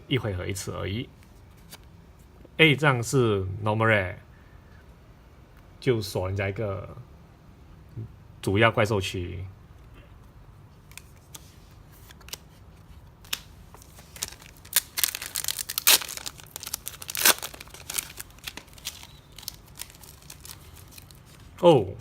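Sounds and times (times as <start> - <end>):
foil wrapper tearing and crinkling: 13.2 - 21.4.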